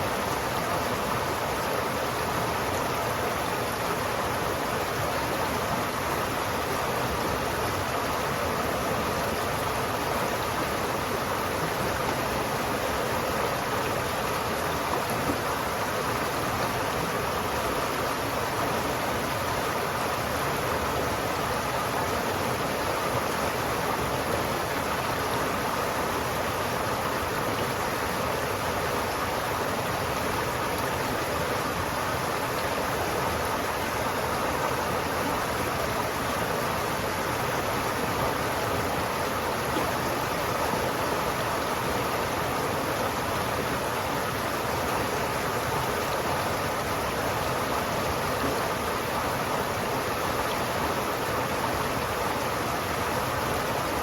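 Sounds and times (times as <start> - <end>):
river water flowing: 0.0 - 54.0.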